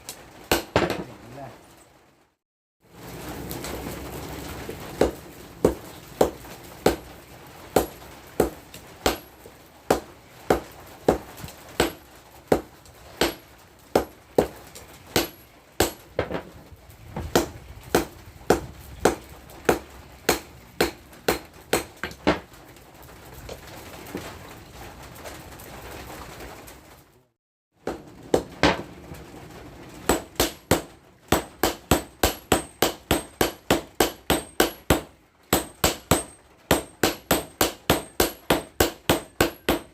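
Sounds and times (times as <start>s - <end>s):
hammer striking steel: 15.2s - 16.1s, 30.1s - 39.9s.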